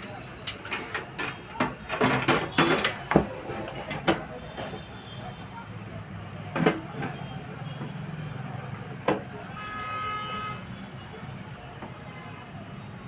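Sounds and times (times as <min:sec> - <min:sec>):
vehicle horn: 0:09.5 - 0:10.8.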